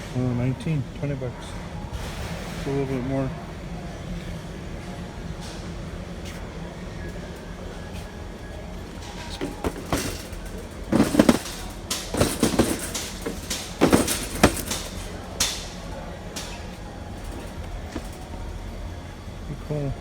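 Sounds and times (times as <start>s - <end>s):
steady low hum: 2.8s - 20.0s
plastic organizer lid and bins clacking: 8.9s - 15.7s.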